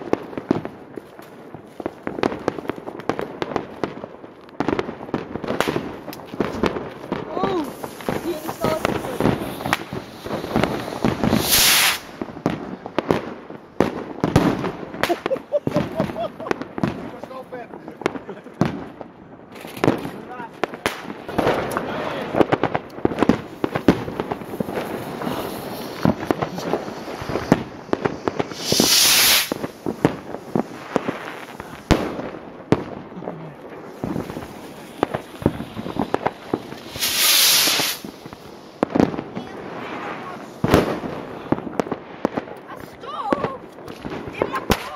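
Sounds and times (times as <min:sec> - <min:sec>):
firecracker bangs: 0:04.6 - 0:33.2, 0:33.8 - 0:44.9
sharp cracks and pops: 0:05.6 - 0:08.3
loud hiss: 0:07.6 - 0:12.2, 0:28.1 - 0:31.9, 0:33.9 - 0:38.8.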